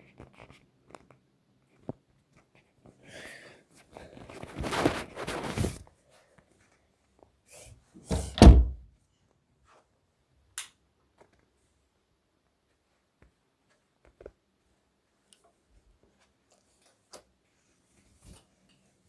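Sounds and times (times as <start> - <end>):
scraping and rustling: 4.0 - 5.9.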